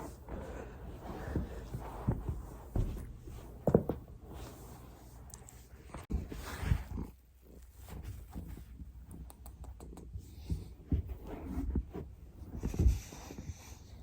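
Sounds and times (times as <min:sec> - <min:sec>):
low thumps and rustling: 0:00.0 - 0:04.5.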